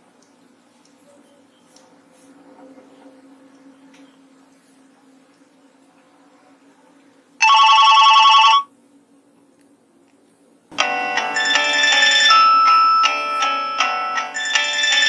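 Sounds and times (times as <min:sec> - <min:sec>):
polyphonic ringtone melody: 0:07.4 - 0:08.6, 0:10.8 - 0:15.0
rapidly pulsing phone tone: 0:07.4 - 0:08.7, 0:10.8 - 0:15.0.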